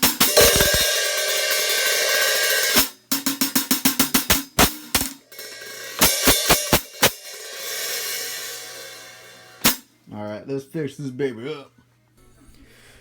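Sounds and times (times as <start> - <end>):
hi-hat cymbals played: 0.0 - 9.9.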